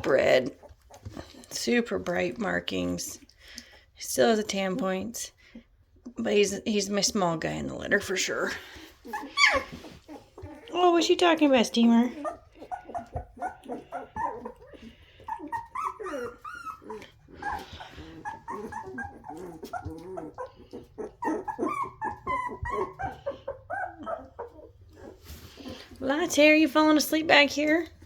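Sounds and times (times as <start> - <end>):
puppies whining and yipping: 0.5 - 1.6, 8.1 - 26.5
puppies barking: 8.7 - 25.8.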